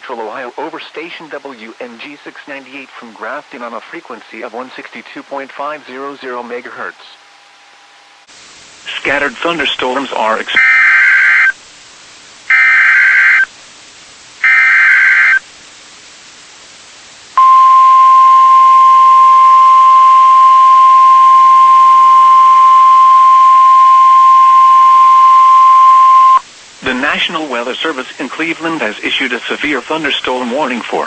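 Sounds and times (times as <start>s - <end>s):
digital header bursts: 12.5s - 13.5s, 14.4s - 15.4s
steady warning alarm tone: 12.5s - 13.5s, 14.4s - 15.4s, 17.4s - 26.4s.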